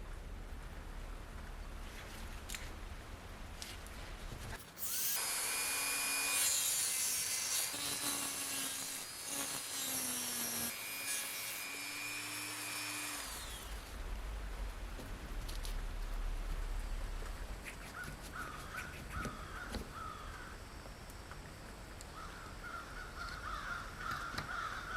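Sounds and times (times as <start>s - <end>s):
electric rotary tool whining: 4.8s - 13.9s.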